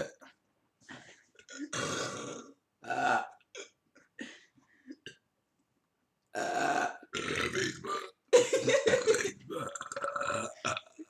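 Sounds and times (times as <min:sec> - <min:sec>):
person burping: 0:01.5 - 0:03.8, 0:06.3 - 0:11.0.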